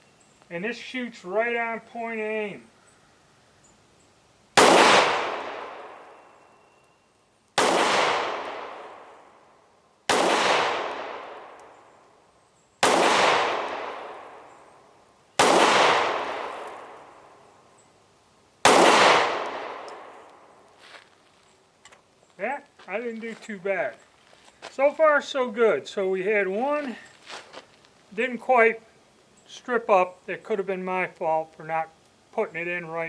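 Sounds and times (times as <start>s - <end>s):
pistol shots with echo: 4.6s - 6.2s, 7.6s - 9.2s, 10.1s - 11.7s, 12.8s - 14.5s, 15.4s - 17.2s, 18.6s - 20.4s.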